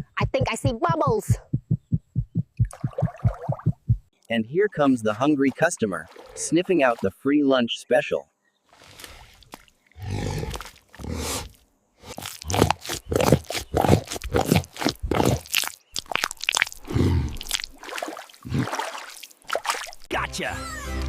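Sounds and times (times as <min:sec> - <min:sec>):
crocodile crunching and chomping bait: 0:08.7 - 0:20.1.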